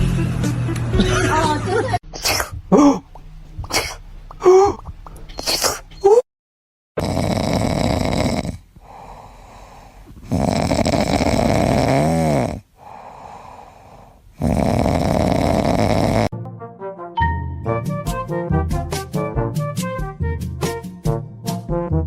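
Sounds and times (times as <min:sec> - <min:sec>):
loud snoring: 0:07.0 - 0:16.4
quiet breaths: 0:08.3 - 0:16.0.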